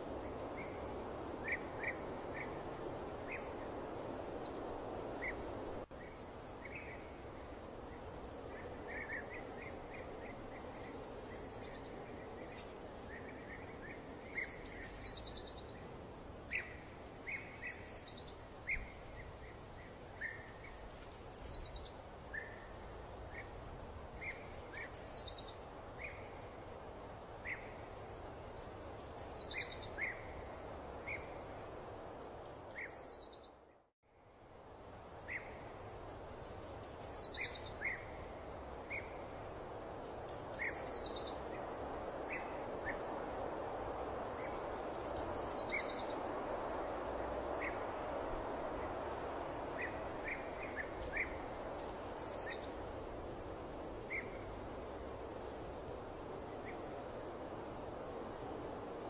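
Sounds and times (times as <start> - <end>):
small birds singing: 0.0 - 33.9, 34.8 - 59.0
soft steady hiss: 0.0 - 59.0.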